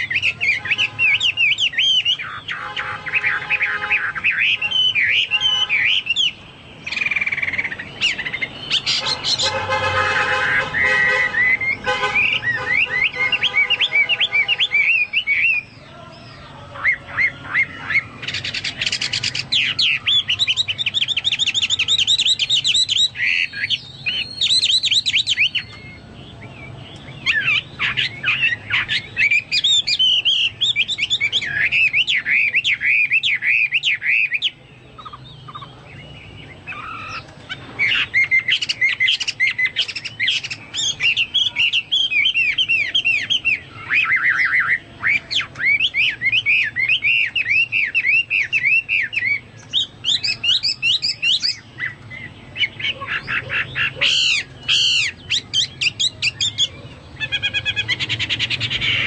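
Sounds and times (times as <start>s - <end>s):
songbird whistling rapid notes: 10.4s - 15.8s.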